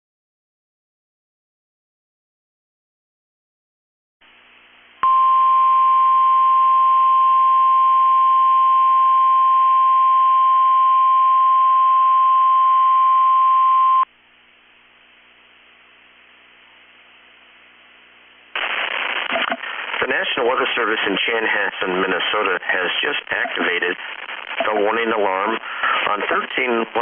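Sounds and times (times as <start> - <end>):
faint radio hiss: 14.2 - 27.0.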